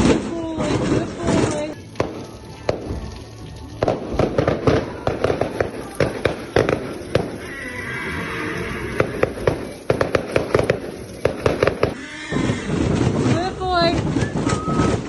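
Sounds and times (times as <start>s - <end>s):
fireworks bangs and crackling pops: 0.0s - 7.4s, 9.0s - 15.0s.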